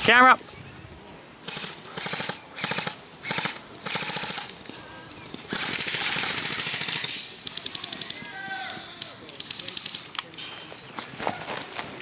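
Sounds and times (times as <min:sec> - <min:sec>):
airsoft gun full-auto bursts: 0:01.4 - 0:04.5, 0:05.5 - 0:08.2.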